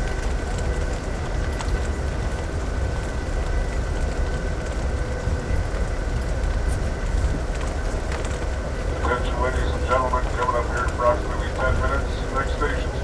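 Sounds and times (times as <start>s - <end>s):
train low rumble: 0.0s - 13.0s.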